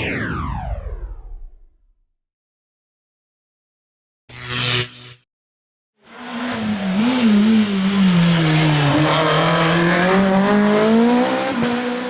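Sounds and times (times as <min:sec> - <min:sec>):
rally car engine accelerating: 0:06.0 - 0:12.0.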